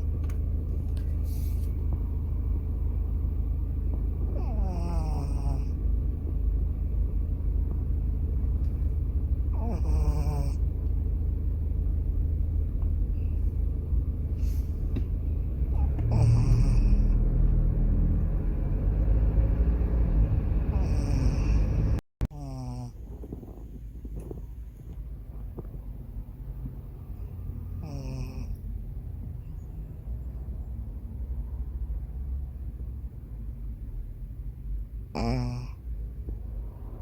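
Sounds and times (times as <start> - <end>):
pet snoring: 4.2 - 5.8, 9.5 - 10.7, 15.6 - 18.1, 20.6 - 24.5, 27.2 - 28.6, 35.1 - 35.9.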